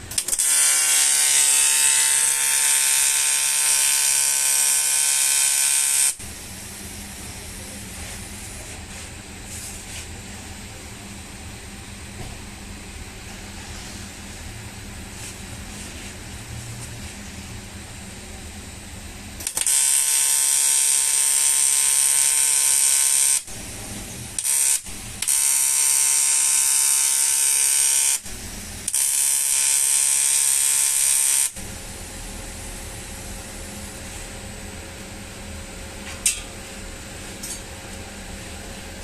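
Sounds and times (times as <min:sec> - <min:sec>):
welding arc buzzing with hiss: 0:00.0 - 0:10.0, 0:19.4 - 0:34.4.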